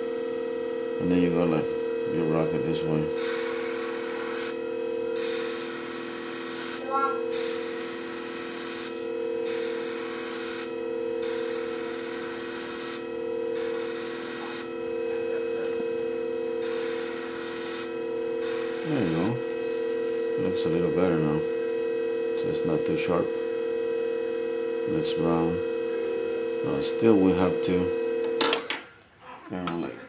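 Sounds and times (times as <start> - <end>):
machine motor hum: 0.0 - 28.5
blade rasping on abrasive disc: 3.2 - 4.6, 5.2 - 13.0, 13.6 - 14.7, 16.6 - 19.2.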